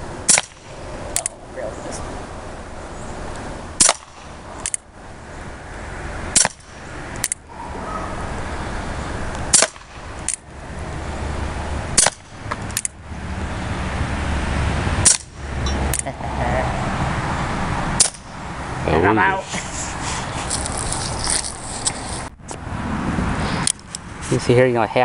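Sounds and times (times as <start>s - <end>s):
air pistol shots: 0.3s - 1.3s, 3.8s - 4.8s, 6.4s - 7.4s, 9.5s - 10.4s, 12.0s - 12.9s, 15.0s - 15.3s, 18.0s - 18.3s.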